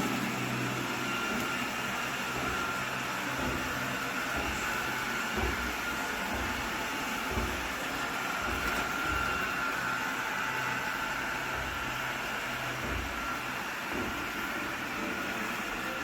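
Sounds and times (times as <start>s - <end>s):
robot vacuum running: 0.0s - 16.0s.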